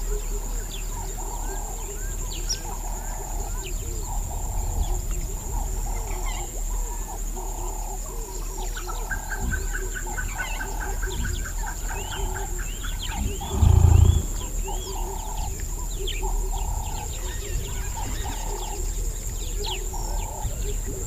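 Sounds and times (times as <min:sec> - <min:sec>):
high insect drone: 0:09.6 - 0:21.0
bird chirps: 0:12.0 - 0:14.9
low rumble: 0:13.0 - 0:14.9.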